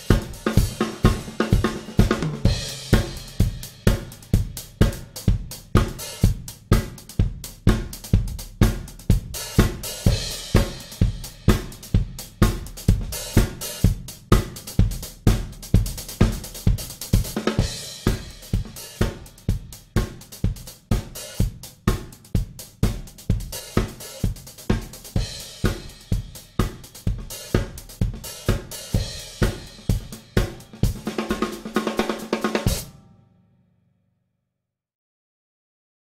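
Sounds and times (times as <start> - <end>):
kick and snare drum strokes: 0.0 - 33.0
hi-hat: 2.7 - 30.8.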